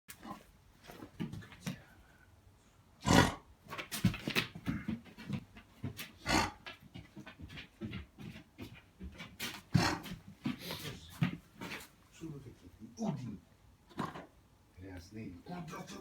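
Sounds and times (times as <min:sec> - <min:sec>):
dog coughing: 0:03.0 - 0:03.4, 0:06.2 - 0:06.6, 0:09.7 - 0:10.2.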